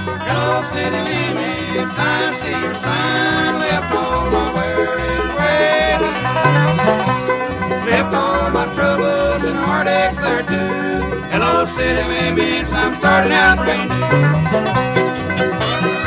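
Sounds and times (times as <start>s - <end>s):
acoustic guitar: 0.0s - 16.0s
banjo picking: 0.0s - 16.0s
fiddle sliding between notes: 0.0s - 16.0s
string bass walking: 0.0s - 16.0s.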